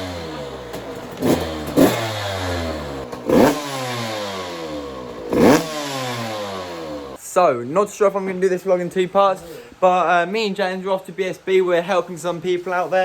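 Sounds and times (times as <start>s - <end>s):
dirt bike engine revving: 0.0s - 7.2s.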